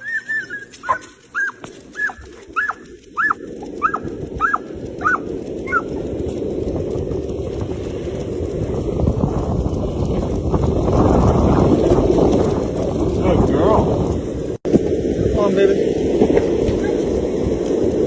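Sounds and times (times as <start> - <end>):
dog yelping: 0.0 - 6.0
rushing noise: 0.0 - 18.0.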